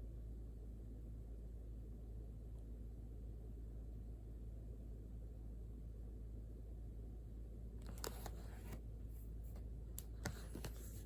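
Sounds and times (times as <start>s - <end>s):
low background hum: 0.0s - 11.0s
pen scratching on paper: 10.2s - 11.0s.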